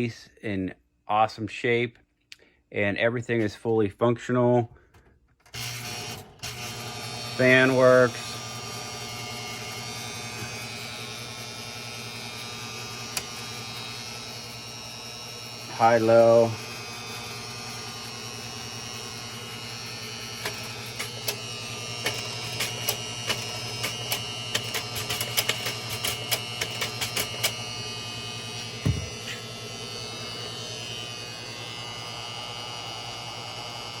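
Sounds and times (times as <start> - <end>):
projector cooling fan hum: 5.6 - 34.0
sharp mechanical clicks: 20.4 - 27.6
heavy mechanical thump: 28.8 - 29.2.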